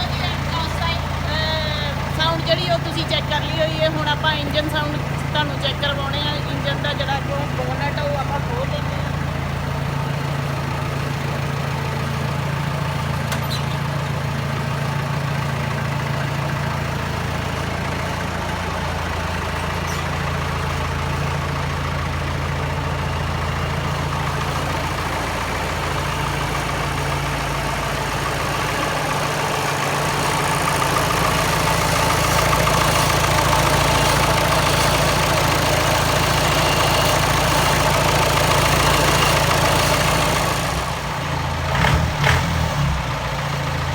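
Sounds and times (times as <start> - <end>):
diesel engine idling: 0.0 - 43.9.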